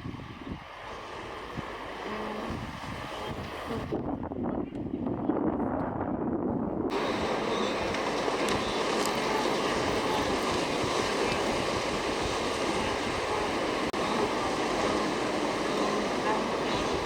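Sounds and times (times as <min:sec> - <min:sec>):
water rushing and splashing: 0:06.9 - 0:17.0.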